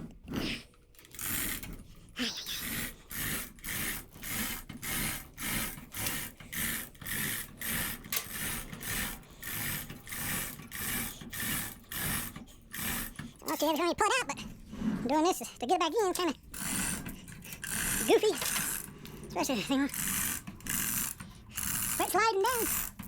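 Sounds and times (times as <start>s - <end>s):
ratchet wrench clicking: 1.0s - 1.7s, 2.5s - 13.2s, 16.6s - 18.9s, 19.9s - 23.0s.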